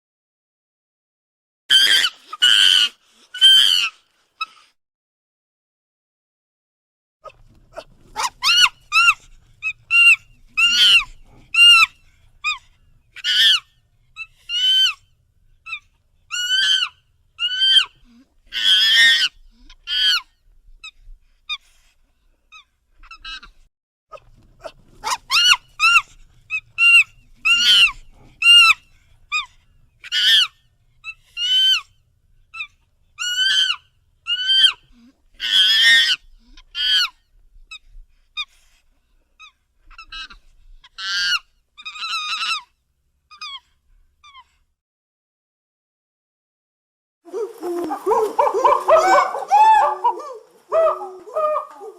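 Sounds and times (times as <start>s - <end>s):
monkey squealing: 1.7s - 4.6s, 8.1s - 12.6s, 13.2s - 15.0s, 15.7s - 20.2s, 22.5s - 23.5s, 25.0s - 31.9s, 32.5s - 37.2s, 39.4s - 42.7s, 43.3s - 43.6s, 47.3s - 51.9s.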